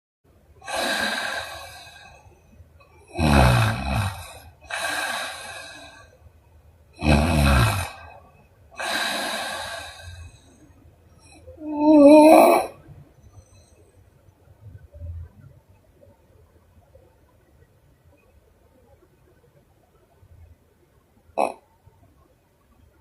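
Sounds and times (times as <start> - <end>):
woman snoring: 0.6 - 2.2, 3.1 - 6.1, 7.0 - 8.2, 8.8 - 10.4, 11.6 - 12.7
breathy blowing exhale: 0.6 - 2.3.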